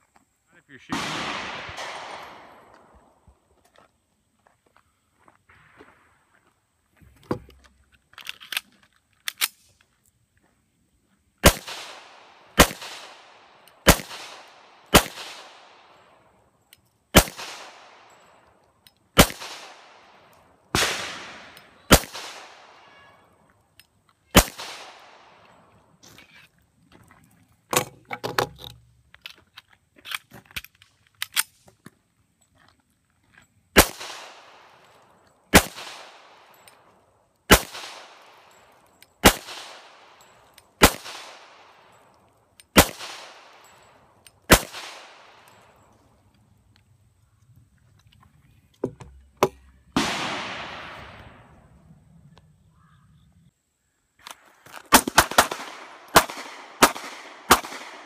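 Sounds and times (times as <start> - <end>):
handgun shots with echo: 0.9 - 2.9, 11.4 - 15.8, 17.2 - 18.1, 19.2 - 20.2, 20.8 - 23.0, 24.3 - 25.4, 35.5 - 36.8, 42.7 - 43.7, 50.0 - 51.4, 54.9 - 58.0.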